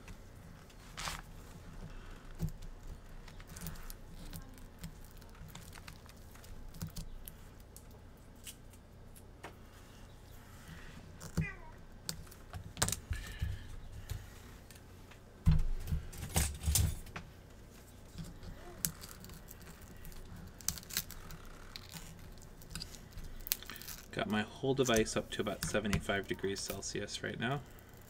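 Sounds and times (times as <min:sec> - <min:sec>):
glass clicking and crackling: 0:18.1 - 0:28.0.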